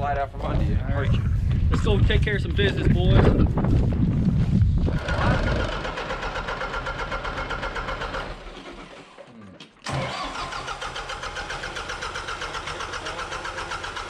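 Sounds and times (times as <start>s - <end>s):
diesel engine running: 4.9s - 9.0s, 9.9s - 14.0s.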